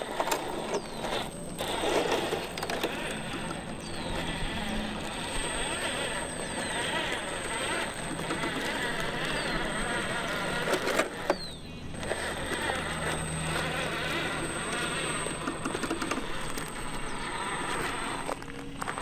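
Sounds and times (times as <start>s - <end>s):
rc truck driving over dirt: 0.0s - 19.0s.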